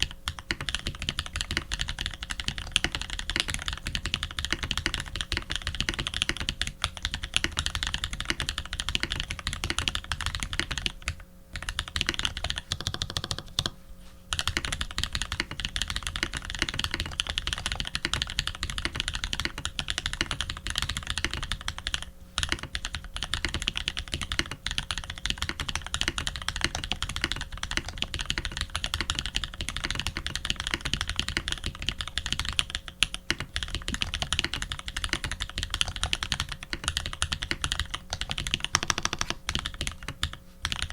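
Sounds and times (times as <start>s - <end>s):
mechanical keyboard typing: 0.0s - 40.9s.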